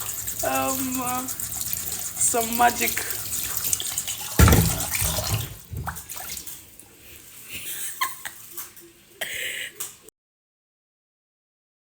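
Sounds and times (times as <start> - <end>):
water running and splashing: 0.0 - 9.3
heavy knock: 4.4 - 5.1.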